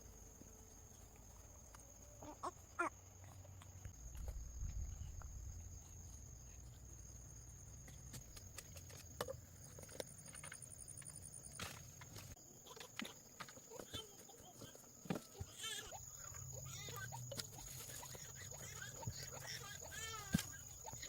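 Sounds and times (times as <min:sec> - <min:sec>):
high-pitched insect-like hum: 0:09.3 - 0:21.0.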